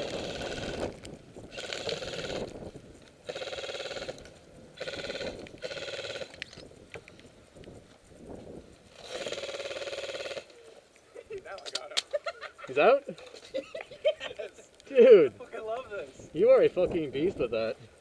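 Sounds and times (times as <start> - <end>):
airsoft gun firing bursts: 0.0 - 2.6, 3.2 - 6.5, 8.9 - 10.6.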